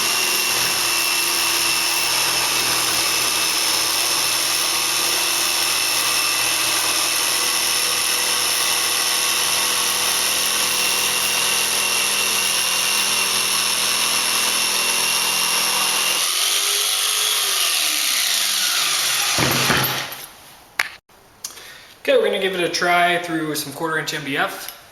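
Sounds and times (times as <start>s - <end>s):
jigsaw sawing wood: 0.0s - 20.1s.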